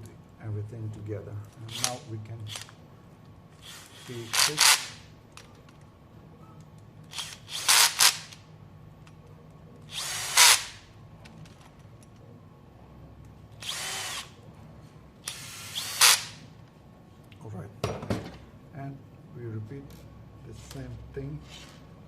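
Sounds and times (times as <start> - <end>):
power screwdriver driving screws: 3.6 - 5.0, 7.1 - 8.4, 9.9 - 10.8, 13.6 - 14.3, 15.2 - 16.4.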